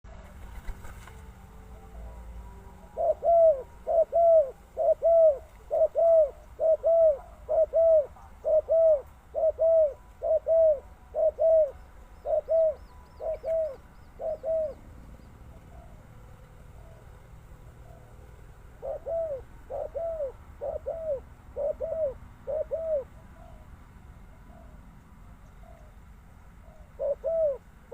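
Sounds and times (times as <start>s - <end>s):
dove cooing: 1.7s - 27.9s
small bird chirping: 11.2s - 16.0s.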